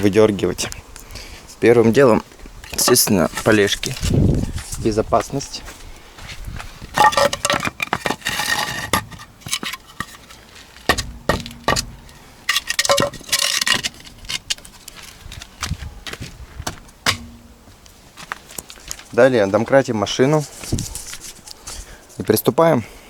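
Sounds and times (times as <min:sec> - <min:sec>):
metal objects clinking and knocking: 0:07.0 - 0:14.9, 0:16.7 - 0:17.8
ringing metal clanks: 0:10.9 - 0:14.4, 0:16.7 - 0:17.8.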